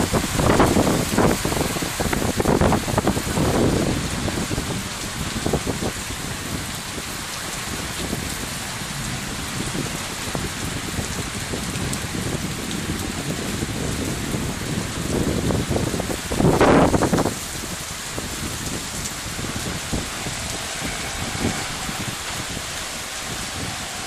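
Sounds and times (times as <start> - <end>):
heavy rain falling: 0.0 - 24.0
low rumble: 17.2 - 24.0.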